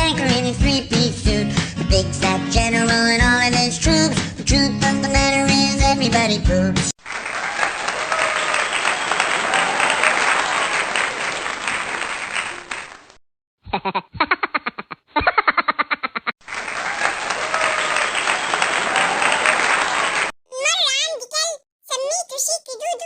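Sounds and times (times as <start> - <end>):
crowd applause: 7.0 - 13.2, 16.4 - 20.3.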